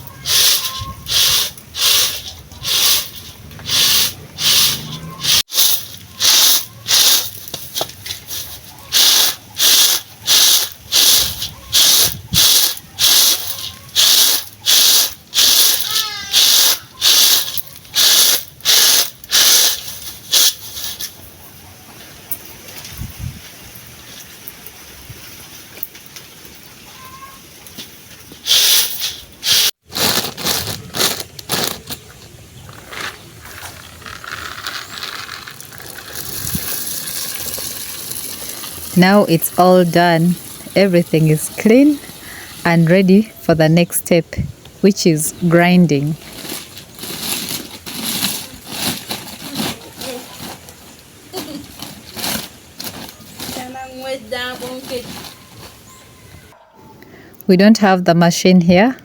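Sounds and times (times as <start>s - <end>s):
groundnuts rattling on winnowing tray: 0.0s - 21.0s, 28.5s - 31.4s, 32.8s - 43.4s.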